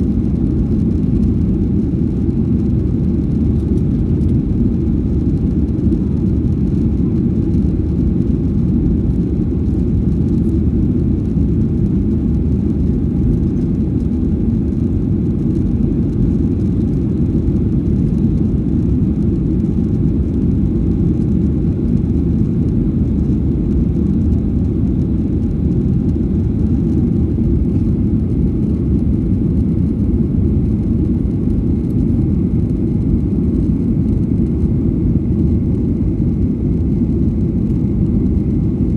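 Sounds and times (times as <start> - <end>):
airplane cabin engine rumble: 0.0 - 38.9.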